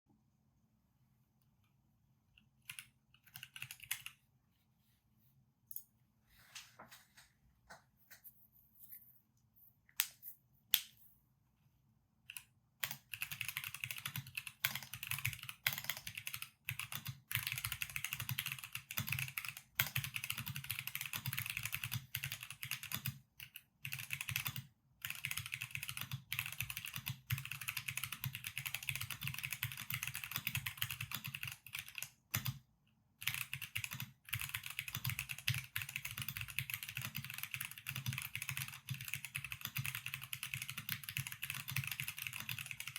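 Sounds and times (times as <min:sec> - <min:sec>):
mechanical keyboard typing: 0:02.6 - 0:04.2, 0:12.3 - 0:32.6, 0:33.2 - 0:42.9.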